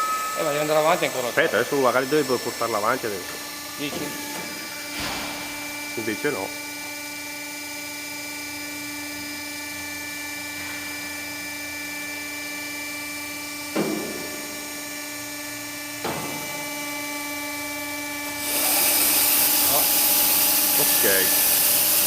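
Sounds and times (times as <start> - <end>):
band saw machine humming: 0.0 - 7.5, 15.8 - 22.0.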